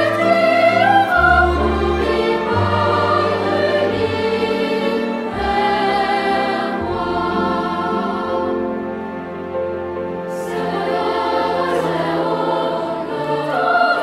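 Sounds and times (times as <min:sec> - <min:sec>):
choir singing held notes: 0:00.0 - 0:09.6, 0:10.2 - 0:14.0
low instrumental accompaniment: 0:00.0 - 0:14.0.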